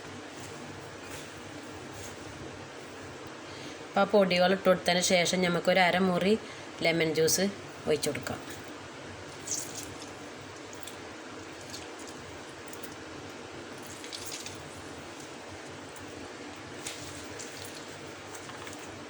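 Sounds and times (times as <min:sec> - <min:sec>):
juice dripping wet ticks: 0:08.5 - 0:19.0.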